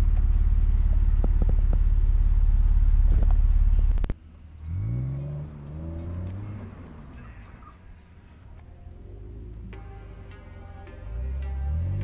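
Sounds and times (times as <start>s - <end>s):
car engine idling: 0.0s - 12.0s
faint rising tone: 1.9s - 12.0s.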